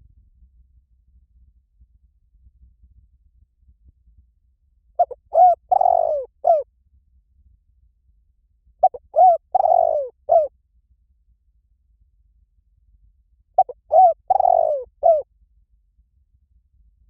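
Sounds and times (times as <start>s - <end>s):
dove cooing: 5.0s - 6.6s, 8.8s - 10.5s, 13.6s - 15.2s.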